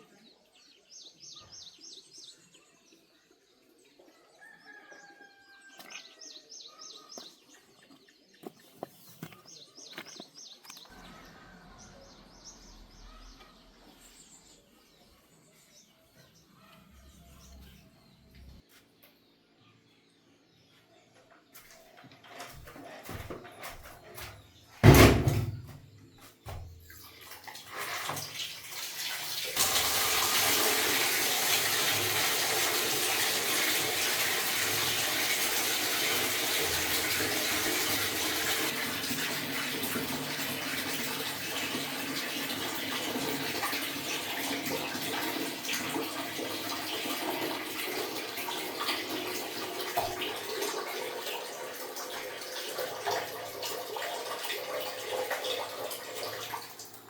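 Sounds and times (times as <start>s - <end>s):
water gushing: 27.1s - 57.0s.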